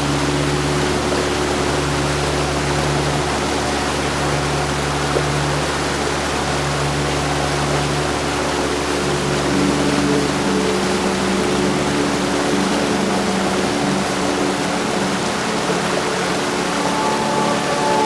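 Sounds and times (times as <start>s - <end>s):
higher tone: 15.4s - 18.0s.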